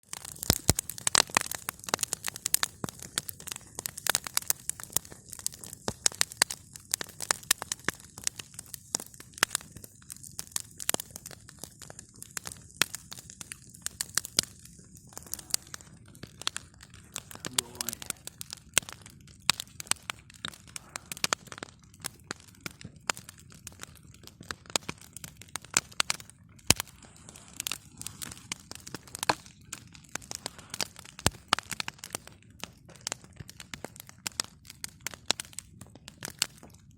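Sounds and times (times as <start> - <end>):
burning wood cracking and popping: 0.0 - 36.9
flame hiss: 0.1 - 21.7, 26.7 - 29.5, 30.1 - 31.6.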